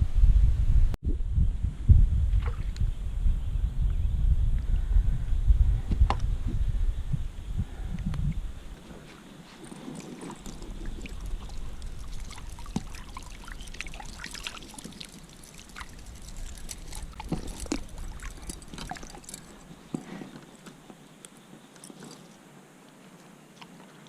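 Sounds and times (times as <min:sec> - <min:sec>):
creek water trickling and splashing: 0:08.7 - 0:22.5.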